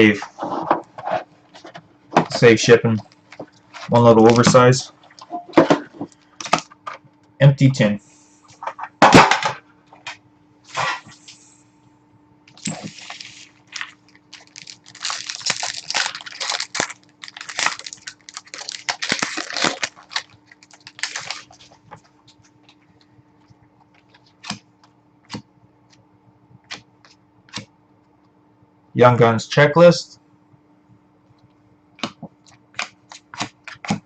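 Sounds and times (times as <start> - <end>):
faint steady hum: 0.0 - 34.0
card wrappers tearing and crinkling: 12.5 - 22.8.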